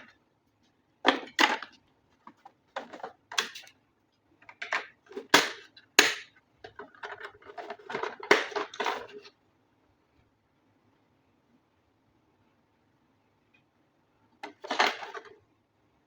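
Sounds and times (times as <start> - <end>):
packaging handling clicks and scrapes: 4.6 - 9.3.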